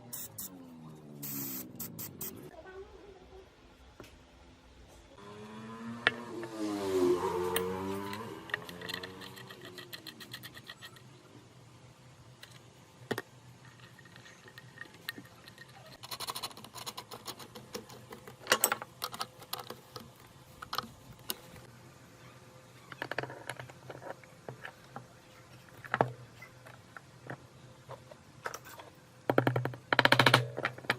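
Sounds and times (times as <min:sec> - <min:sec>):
small metal parts clinking: 0:07.5 - 0:11.1.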